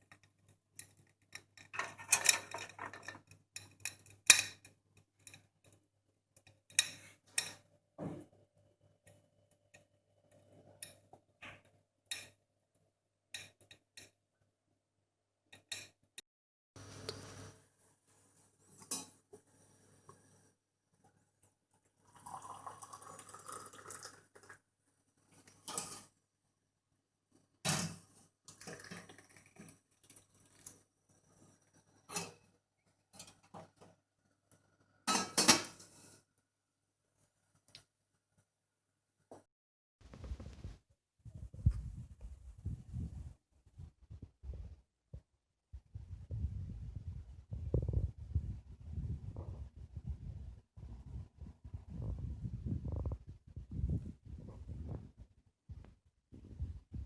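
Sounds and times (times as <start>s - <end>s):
utensils and dishes clinking: 1.4s - 4.6s.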